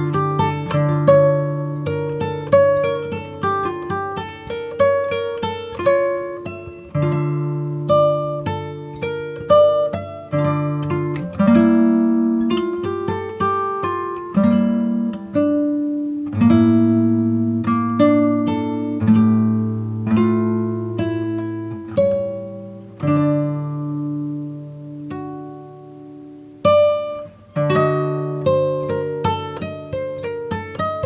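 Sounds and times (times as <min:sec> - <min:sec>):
acoustic guitar melody: 0:00.0 - 0:31.0.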